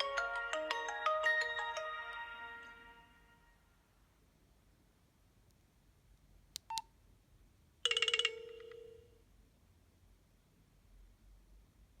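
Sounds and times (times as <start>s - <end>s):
metallic phone chime: 7.9s - 9.1s.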